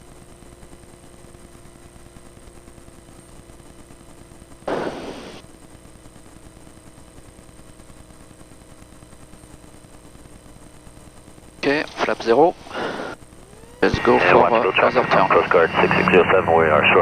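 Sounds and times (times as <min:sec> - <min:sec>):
burst of static noise: 0:02.0 - 0:17.0
aircraft cabin hum: 0:04.7 - 0:05.4.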